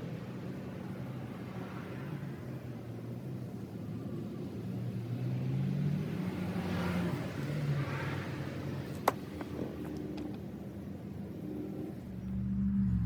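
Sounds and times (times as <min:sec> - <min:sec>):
vehicle engine passing by: 0:11.9 - 0:13.0.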